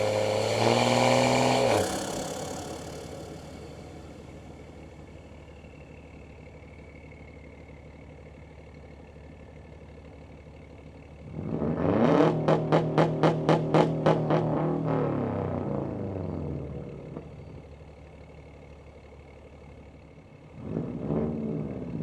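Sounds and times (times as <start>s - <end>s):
car engine revving: 0.0s - 5.3s, 11.2s - 17.3s.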